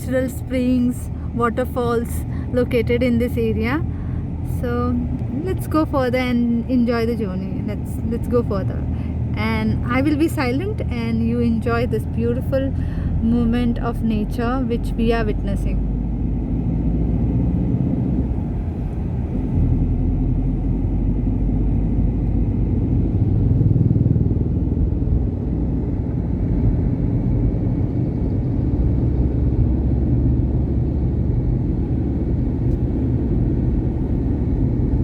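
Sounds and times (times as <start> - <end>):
vehicle engine and road noise: 0.0 - 35.0.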